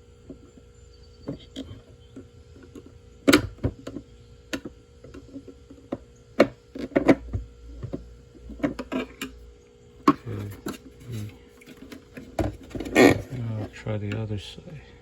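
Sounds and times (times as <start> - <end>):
faint steady hum: 0.0 - 15.0
plastic clicks and knocks: 1.2 - 9.4.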